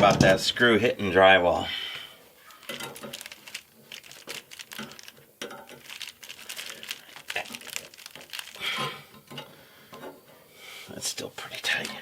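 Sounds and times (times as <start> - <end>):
hands rustling: 2.5 - 9.2.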